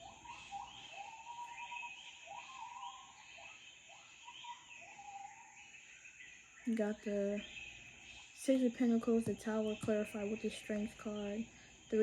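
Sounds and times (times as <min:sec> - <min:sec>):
faint whistled animal calls: 0:00.0 - 0:08.5.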